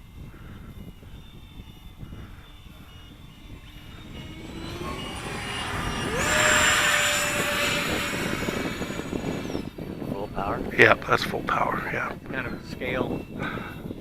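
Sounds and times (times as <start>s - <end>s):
electric ducted fan whine: 0.0s - 9.9s.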